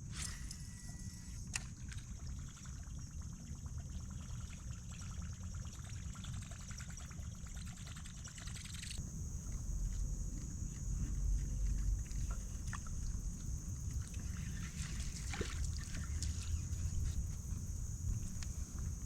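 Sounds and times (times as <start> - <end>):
low rumble: 9.0 - 19.0
water pouring and splashing: 13.8 - 16.9.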